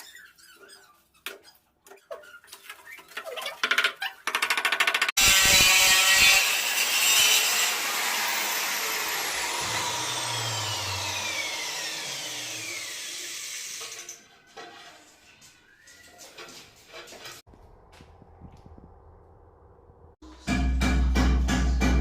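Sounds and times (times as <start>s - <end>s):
electric power tool whining: 7.6s - 14.0s.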